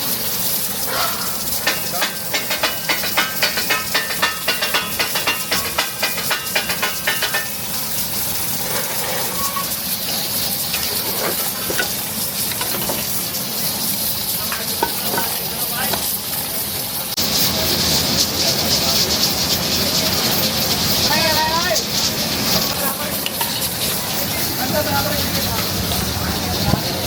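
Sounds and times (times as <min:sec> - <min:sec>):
chicken sizzling in a pan: 0:00.0 - 0:27.0
metal ladle clattering on pan: 0:01.0 - 0:07.8, 0:09.3 - 0:13.3, 0:14.3 - 0:16.2.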